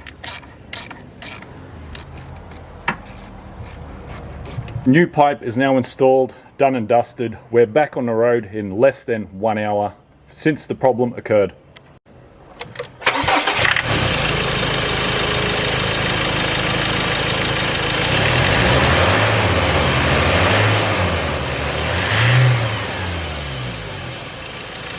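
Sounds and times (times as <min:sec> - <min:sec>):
starter clicks: 0:00.0 - 0:04.8
truck engine revving: 0:17.8 - 0:24.2.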